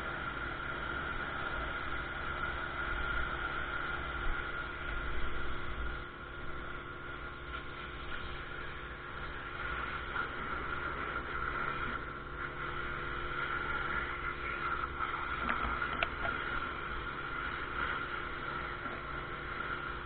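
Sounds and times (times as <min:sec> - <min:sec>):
water jet spraying: 0:00.0 - 0:20.0.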